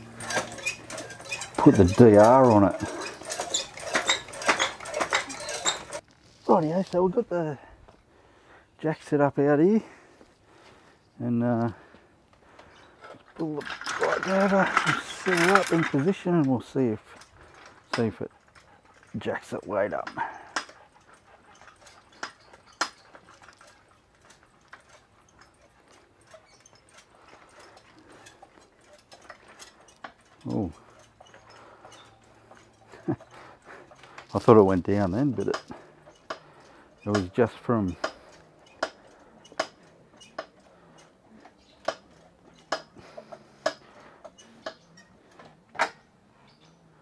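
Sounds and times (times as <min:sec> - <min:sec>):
hydraulic jack pumping clicks: 0:00.0 - 0:06.0, 0:35.4 - 0:46.0.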